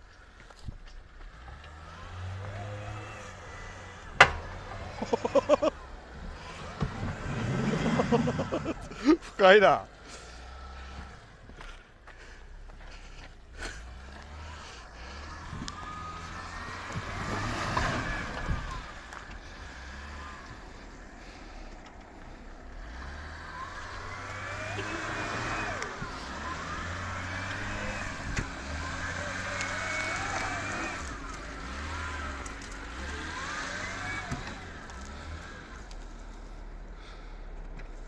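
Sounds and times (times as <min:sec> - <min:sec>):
vehicle engine running: 0:00.0 - 0:38.0
squealing tones: 0:23.5 - 0:34.6.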